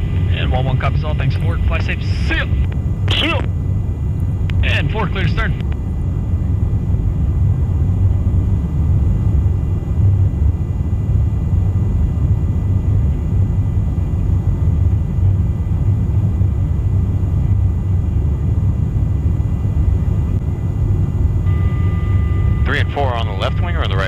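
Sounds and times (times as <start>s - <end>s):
aircraft engine drone inside cabin: 0.0s - 24.0s
faint high whine: 17.2s - 24.0s.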